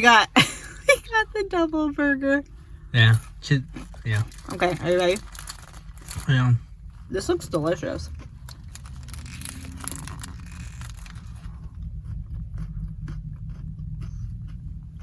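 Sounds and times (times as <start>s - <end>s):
steady low hum: 0.0s - 15.0s
person chewing a burger: 3.1s - 7.1s, 8.0s - 15.0s
wrapper paper rustling: 4.1s - 6.4s, 8.6s - 11.4s.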